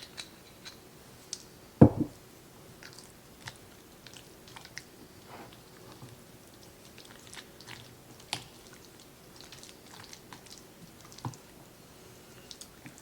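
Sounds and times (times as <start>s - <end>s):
spoon tapping bowl: 1.8s - 2.1s.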